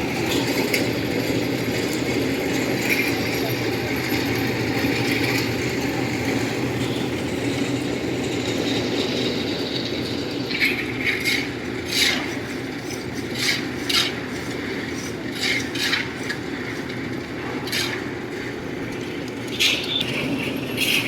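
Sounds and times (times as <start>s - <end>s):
steady machine drone: 0.0s - 13.2s.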